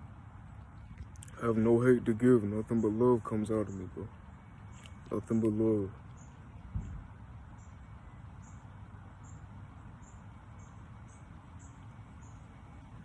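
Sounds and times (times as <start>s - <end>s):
low steady rumble: 0.0s - 13.0s.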